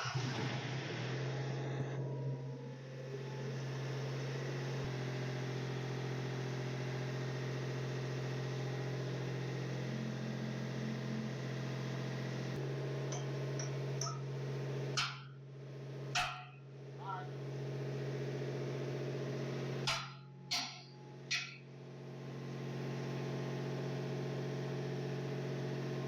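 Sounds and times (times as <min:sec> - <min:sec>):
steady mechanical hum: 0:00.0 - 0:26.0
sharp knocks: 0:16.1 - 0:16.6.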